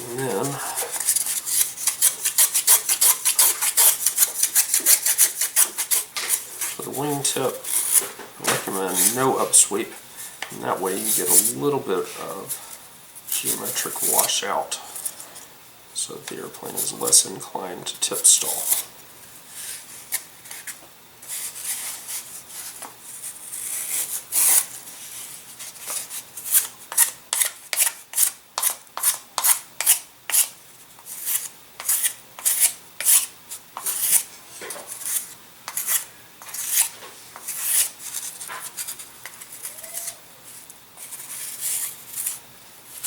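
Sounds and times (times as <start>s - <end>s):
razor plane scraping wood: 0.1s - 9.6s, 25.8s - 30.5s, 31.1s - 40.2s, 41.0s - 42.4s.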